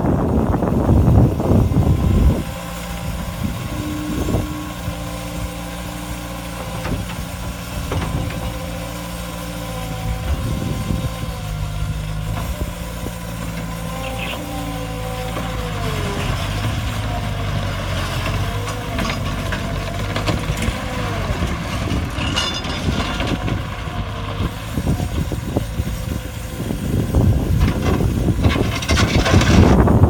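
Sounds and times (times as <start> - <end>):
diesel loader engine running: 0.0 - 30.0
wavering whine: 1.0 - 6.2, 13.9 - 17.2.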